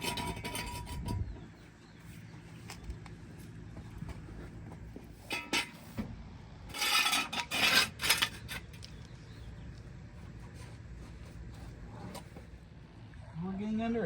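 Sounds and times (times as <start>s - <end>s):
metal scraping and rattling: 0.0s - 1.5s, 5.1s - 8.9s.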